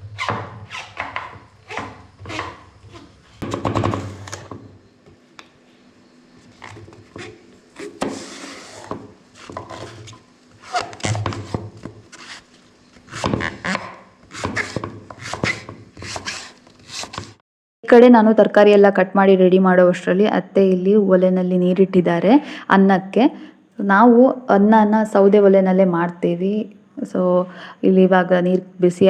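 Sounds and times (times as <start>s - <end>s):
knife cutting on a board: 0.2s - 4.5s, 6.6s - 17.4s.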